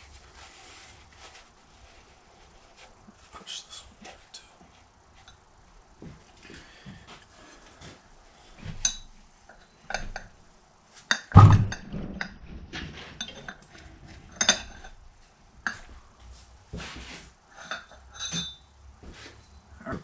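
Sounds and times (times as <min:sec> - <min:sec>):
heavy knock: 0:11.4 - 0:12.7.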